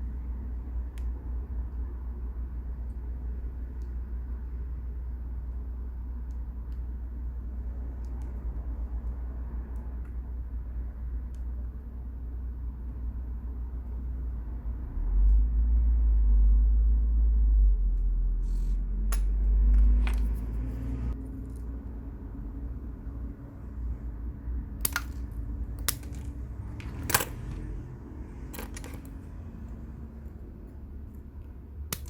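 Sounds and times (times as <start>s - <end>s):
low handling rumble: 14.2s - 32.0s.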